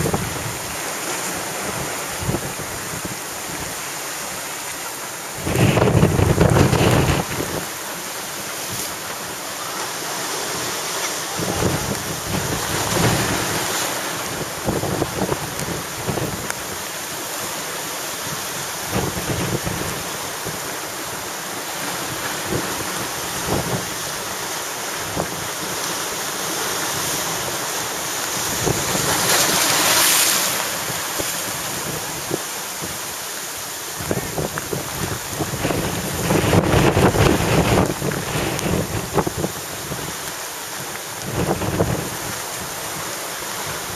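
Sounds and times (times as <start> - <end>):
wind buffeting microphone: 0.0 - 3.8, 5.3 - 7.8, 11.3 - 16.7, 18.8 - 20.6, 22.4 - 24.2, 34.0 - 40.3, 41.2 - 43.0
surf breaking on rocks: 0.0 - 43.9.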